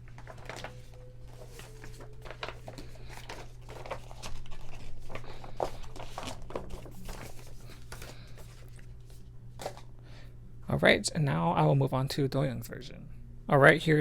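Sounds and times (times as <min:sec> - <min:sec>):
paper poster crinkling: 0:00.0 - 0:09.9.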